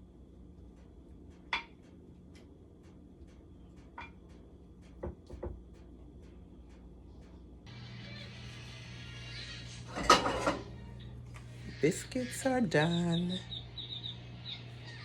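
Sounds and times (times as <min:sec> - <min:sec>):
steady low hum: 0:00.0 - 0:15.0
music: 0:07.7 - 0:10.0.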